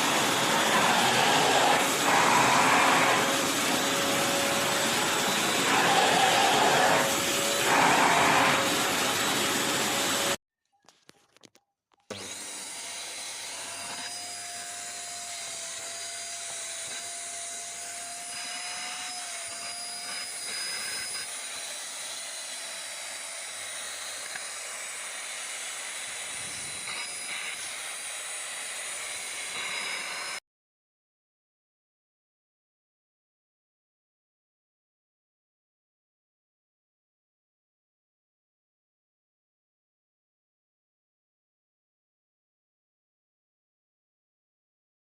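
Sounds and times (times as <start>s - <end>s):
stick vacuum cleaner running: 0.0s - 10.4s, 12.1s - 30.4s.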